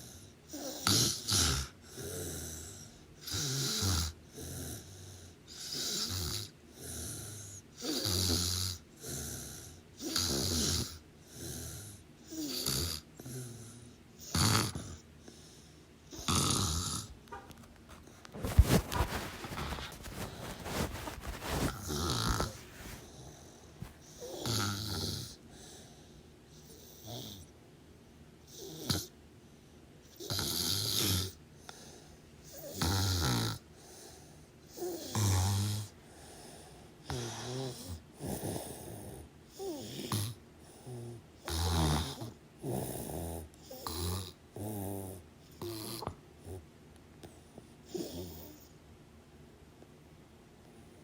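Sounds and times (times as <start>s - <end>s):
person snoring: 0.5s - 15.0s, 16.1s - 17.1s, 18.4s - 25.9s, 34.8s - 35.9s.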